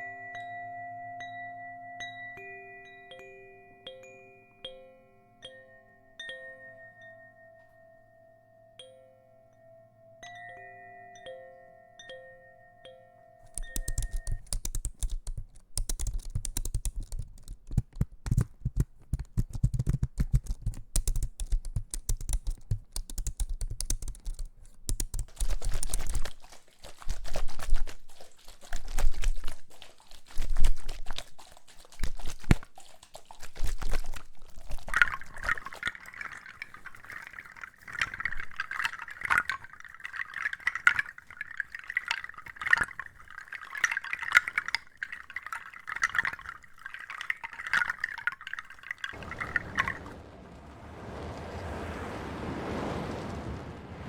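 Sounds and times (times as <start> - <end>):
crackling and clicking: 13.5 - 28.0, 28.6 - 54.0
wet fizzing hiss: 25.3 - 54.0.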